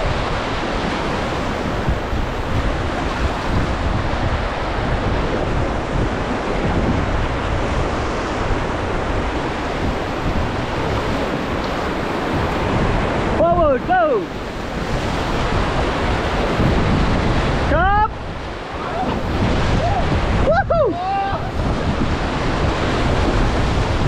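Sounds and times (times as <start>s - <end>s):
wind buffeting microphone: 0.0s - 24.0s
river rapids rushing: 7.4s - 24.0s.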